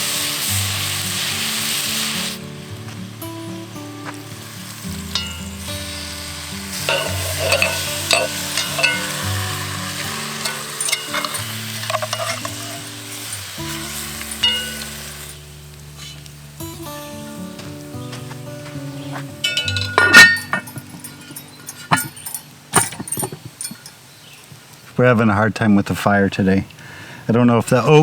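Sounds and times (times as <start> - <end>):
beef sizzling in hot oil: 0.0 - 16.7
background music: 0.0 - 23.2
utensil stirring and scraping: 5.0 - 15.4.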